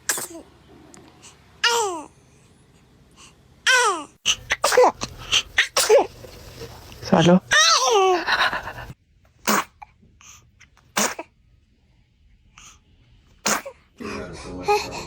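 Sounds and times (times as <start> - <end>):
baby sneezing: 0.0 - 0.5, 3.7 - 9.8, 10.9 - 11.3, 13.4 - 13.8.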